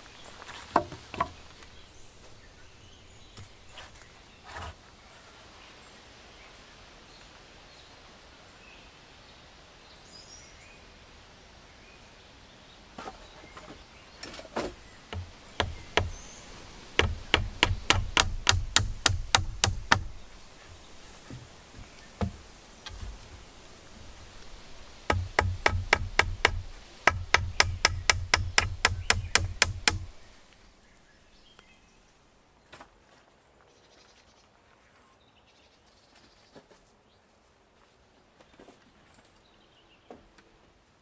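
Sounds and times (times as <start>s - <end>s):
tool striking wood: 0.7s - 1.4s, 15.1s - 16.3s, 16.9s - 20.3s, 22.2s - 23.2s, 25.0s - 30.3s.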